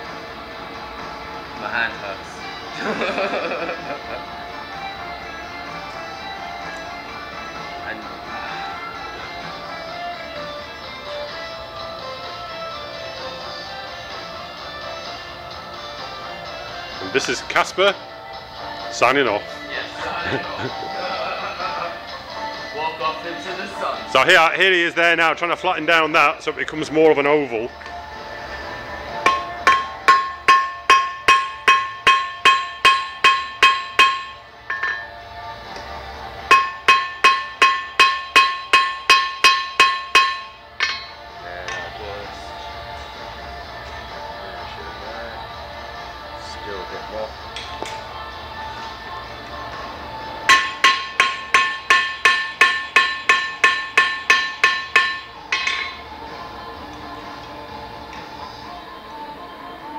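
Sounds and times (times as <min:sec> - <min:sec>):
hammer ringing on metal: 0:29.3 - 0:35.1, 0:36.5 - 0:41.2, 0:50.5 - 0:56.0.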